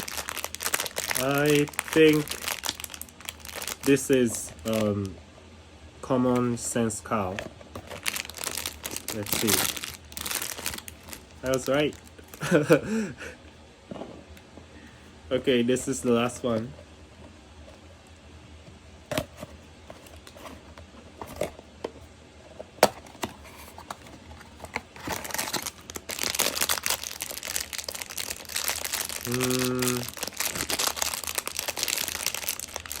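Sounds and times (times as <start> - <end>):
wrapper crinkling and tearing: 0.0 - 5.1, 7.3 - 12.7, 23.6 - 33.0.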